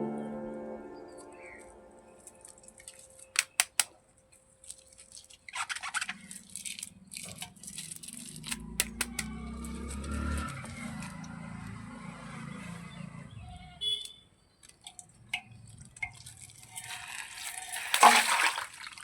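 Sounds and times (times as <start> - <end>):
plastic toys clicking: 2.3 - 11.4
rustling and scraping: 15.2 - 18.7.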